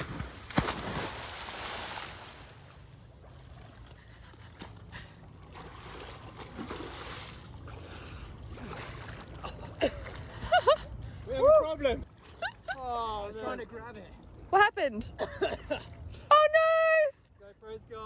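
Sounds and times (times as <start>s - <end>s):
water splashing: 0.0s - 10.5s
water sloshing and lapping: 0.0s - 16.3s.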